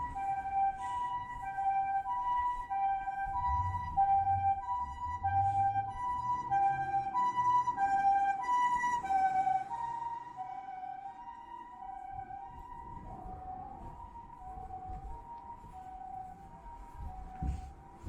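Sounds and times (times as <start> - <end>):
ambulance two-tone siren: 0.0 - 18.0.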